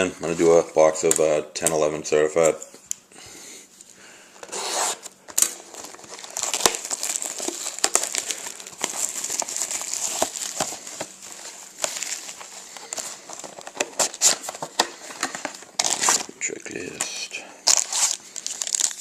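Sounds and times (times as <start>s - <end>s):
plastic wrapping tearing and crinkling: 4.4s - 19.0s.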